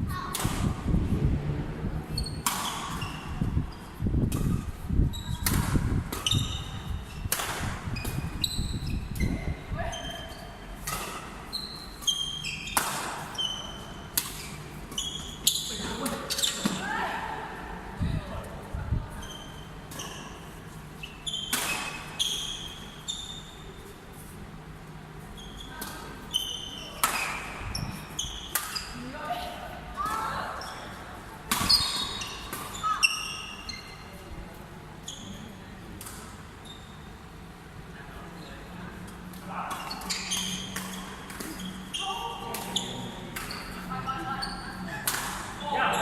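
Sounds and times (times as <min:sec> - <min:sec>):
shoe squeaks on court floor: 0:02.2 - 0:03.9, 0:06.2 - 0:07.3, 0:07.9 - 0:16.8, 0:19.2 - 0:23.8, 0:25.4 - 0:29.0, 0:31.6 - 0:34.2, 0:35.0 - 0:35.6, 0:36.6 - 0:37.2, 0:39.8 - 0:44.9
racket hitting shuttlecock: 0:05.4 - 0:06.6, 0:07.3 - 0:08.3, 0:12.6 - 0:13.3, 0:21.5 - 0:22.2, 0:45.0 - 0:45.6.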